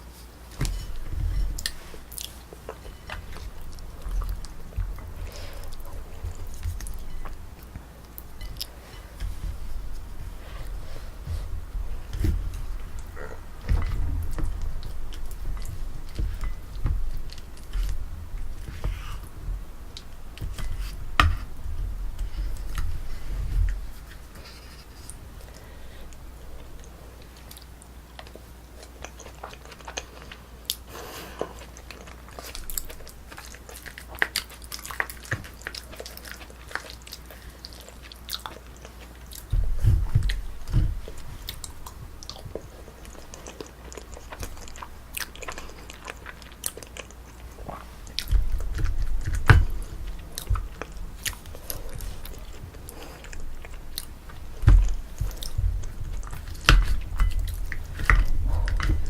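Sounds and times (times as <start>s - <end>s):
chewing with wet mouth clicks: 26.6s - 59.0s
deep thumps: 39.5s - 42.6s, 54.4s - 59.0s.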